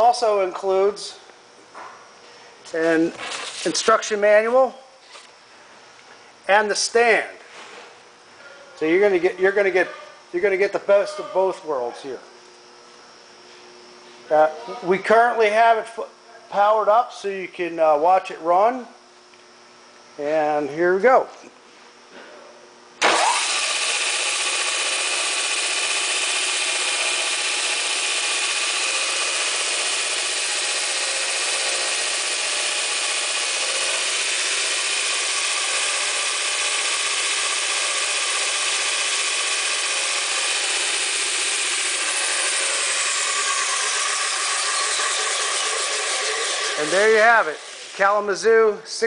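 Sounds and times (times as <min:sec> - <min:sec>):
belt sander motor whirring: 0:23.0 - 0:48.3.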